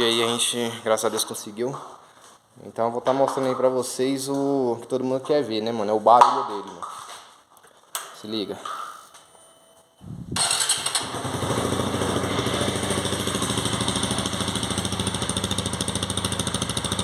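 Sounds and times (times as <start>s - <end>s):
motorcycle engine starting and idling: 10.1s - 17.0s.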